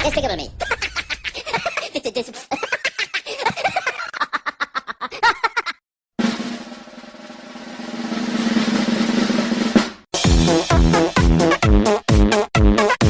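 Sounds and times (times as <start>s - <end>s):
snare drum roll: 6.2s - 11.4s
music with steady beat: 9.7s - 13.0s.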